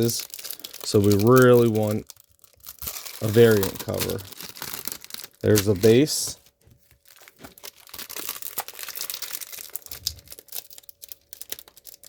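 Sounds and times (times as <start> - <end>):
plastic bag crinkling and tearing: 0.0 - 12.0.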